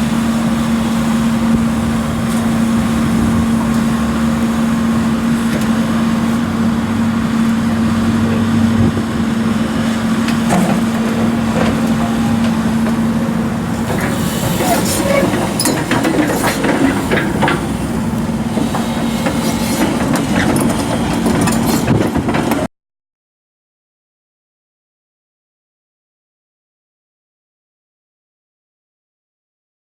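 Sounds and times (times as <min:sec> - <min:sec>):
excavator diesel engine running: 0:00.0 - 0:22.7
metallic clanking and knocking: 0:10.2 - 0:22.7.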